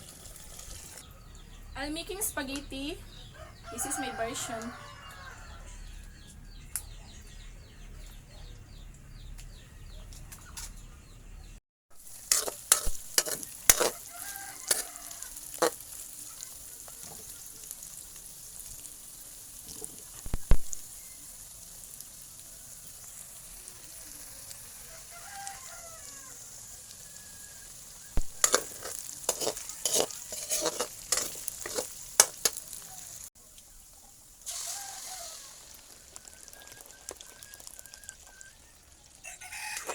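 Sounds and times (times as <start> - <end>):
food sizzling in a frying pan: 0.0 - 6.2, 12.0 - 39.9
rooster crowing: 3.3 - 6.4, 13.7 - 15.4, 24.8 - 27.9, 34.5 - 39.9.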